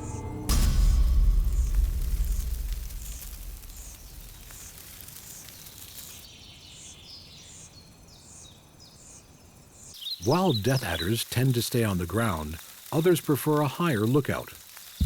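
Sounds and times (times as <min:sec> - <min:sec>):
deep low rumble: 0:00.0 - 0:05.2
falling chirps: 0:00.0 - 0:08.4.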